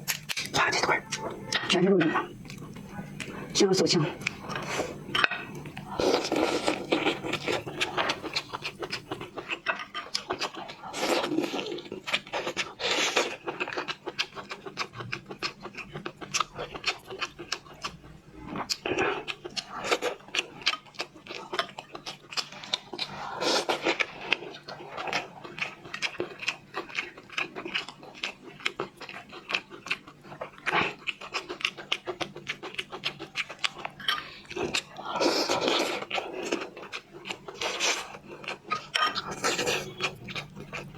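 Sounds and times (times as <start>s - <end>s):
crab shell cracking and clicking: 0.0s - 0.6s.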